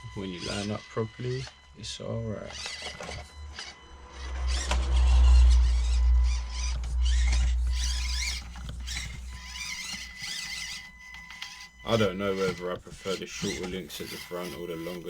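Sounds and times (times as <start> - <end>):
electric motor and gears whining: 0.0 - 15.0
low rumble: 3.8 - 8.9.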